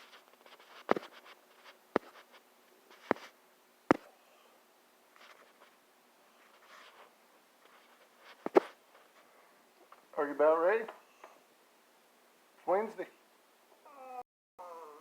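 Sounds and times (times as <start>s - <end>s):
faint rustling: 0.0s - 11.6s.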